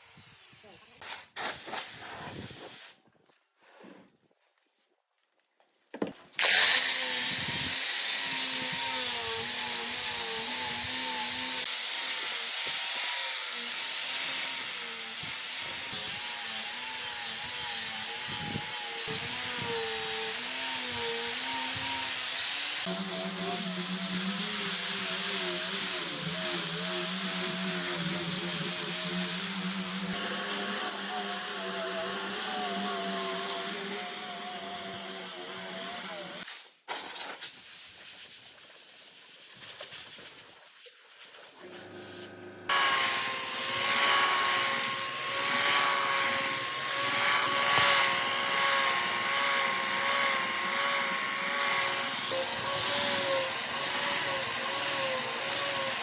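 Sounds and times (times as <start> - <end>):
power tool motor whining: 6.4 - 36.4, 41.6 - 56.0.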